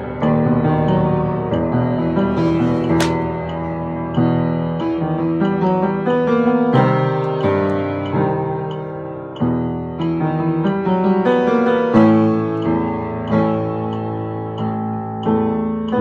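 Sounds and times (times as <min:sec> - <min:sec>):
piano playing notes and chords: 0:00.0 - 0:16.0.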